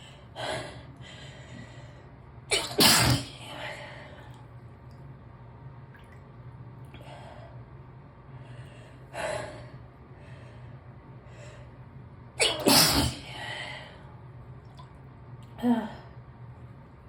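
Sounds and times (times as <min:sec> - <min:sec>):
person sneezing: 0:02.5 - 0:03.4, 0:12.4 - 0:13.3.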